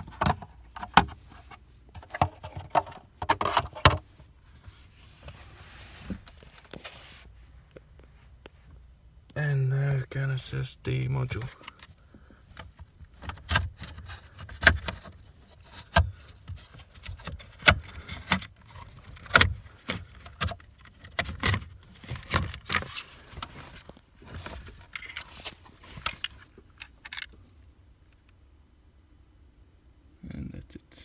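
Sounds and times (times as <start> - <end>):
hands working car parts loose: 0.0 - 4.1, 11.4 - 27.4.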